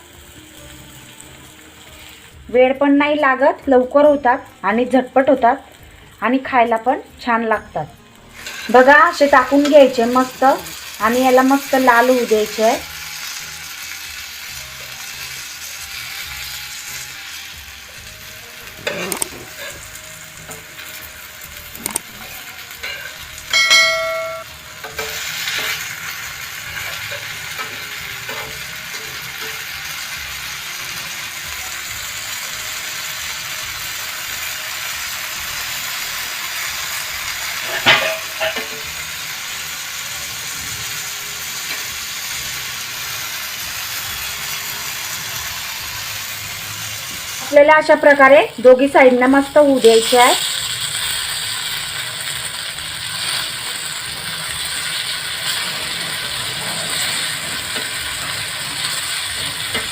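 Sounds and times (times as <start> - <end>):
slices sizzling in oil: 0.0 - 59.9
loud ringing metal clang: 23.5 - 24.5.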